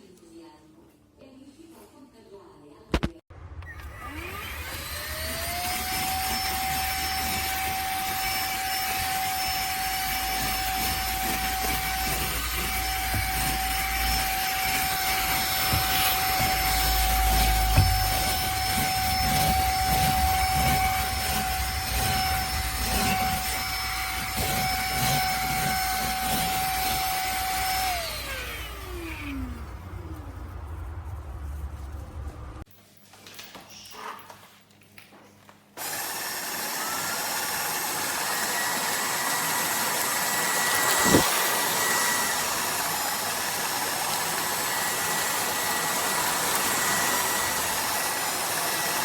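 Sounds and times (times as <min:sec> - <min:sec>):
vacuum cleaner motor whine: 0:03.6 - 0:31.9, 0:35.8 - 0:49.0.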